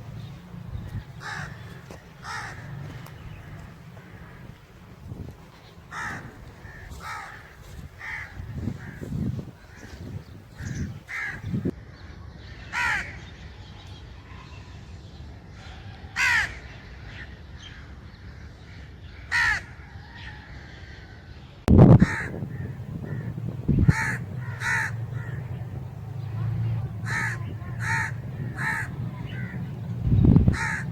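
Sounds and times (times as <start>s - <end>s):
low rumbling noise: 0.0s - 11.7s, 21.7s - 30.9s
crow cawing: 0.8s - 5.2s, 5.9s - 11.7s, 12.8s - 13.2s, 16.2s - 16.6s, 19.3s - 19.8s, 22.0s - 30.9s.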